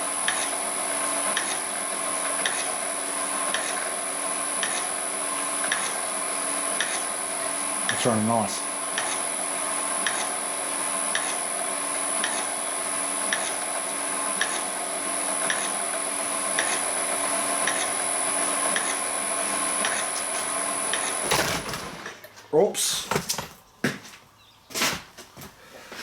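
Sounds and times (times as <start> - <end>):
can crusher machine humming: 0.0 - 22.3.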